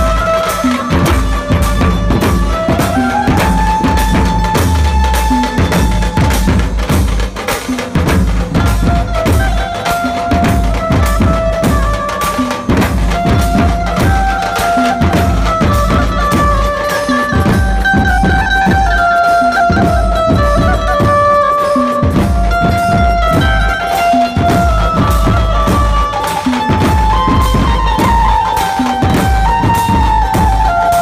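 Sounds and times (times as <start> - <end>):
heavy driving drum beats: 0.0 - 31.0
held-note lead melody: 8.6 - 31.0.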